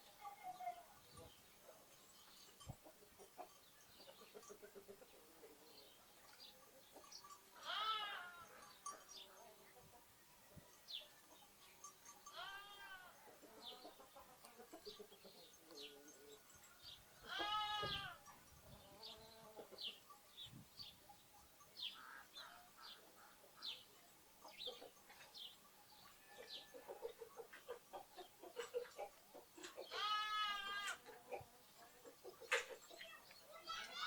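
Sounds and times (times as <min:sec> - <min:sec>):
sparrows chirping: 0:00.0 - 0:09.8, 0:10.4 - 0:34.0
lambs bleating: 0:07.6 - 0:08.5, 0:12.3 - 0:13.2, 0:17.2 - 0:18.2, 0:29.9 - 0:31.0.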